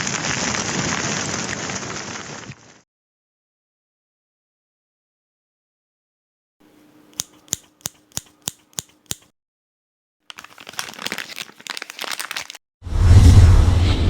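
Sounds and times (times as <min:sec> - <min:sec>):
sharp mechanical clicks: 0:07.1 - 0:09.3.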